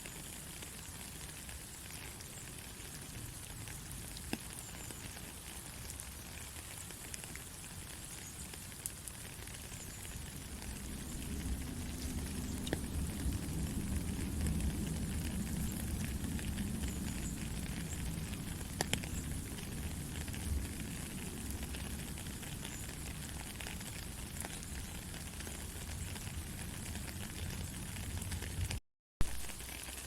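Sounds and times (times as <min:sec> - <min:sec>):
raindrop ticks: 0:00.0 - 0:30.0
steady rain hiss: 0:00.0 - 0:30.0
low rumble: 0:10.2 - 0:22.4.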